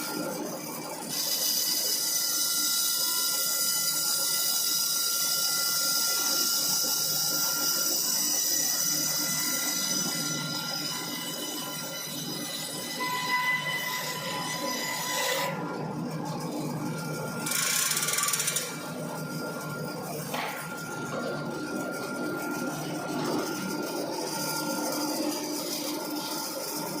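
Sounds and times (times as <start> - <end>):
thin whining tones: 0.0 - 27.0
band saw cutting wood: 1.0 - 15.8.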